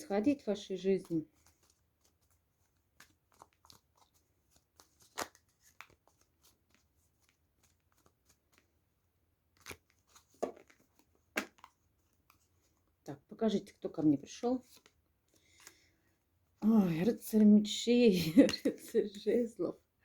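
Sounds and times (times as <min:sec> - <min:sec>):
cards being shuffled: 0:00.2 - 0:08.8, 0:09.5 - 0:13.0, 0:13.9 - 0:15.8.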